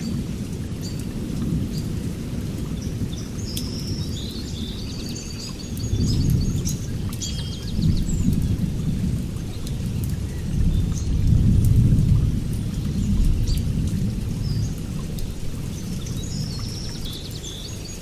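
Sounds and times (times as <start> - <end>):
rain falling: 0.0 - 18.0
low rumbling thunder: 5.9 - 17.2.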